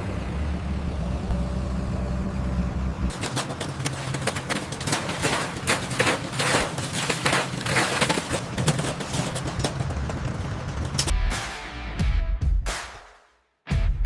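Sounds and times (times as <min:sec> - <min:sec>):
construction knocks and scrapes: 0:03.1 - 0:11.1.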